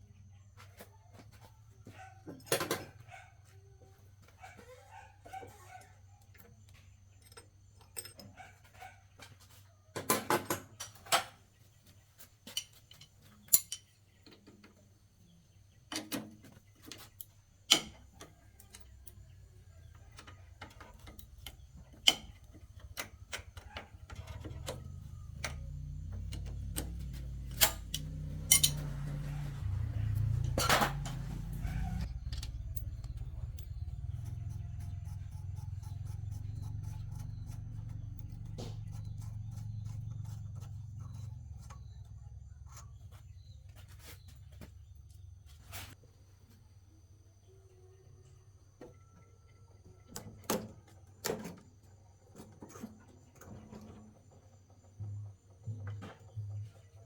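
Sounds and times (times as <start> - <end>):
metal tools clinking: 12.5 - 14.0, 20.2 - 33.8
low steady rumble: 19.0 - 46.0.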